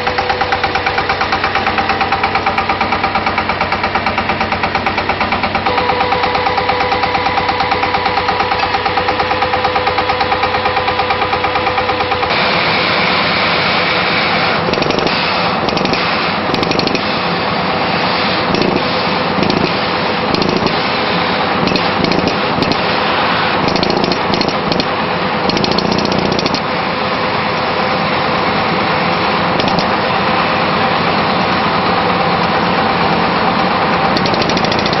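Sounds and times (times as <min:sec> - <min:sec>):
air hammer rattling: 0:00.0 - 0:12.4, 0:14.5 - 0:17.2, 0:18.4 - 0:26.8, 0:29.0 - 0:30.0, 0:34.1 - 0:35.0
drilling rig engine running: 0:00.0 - 0:35.0.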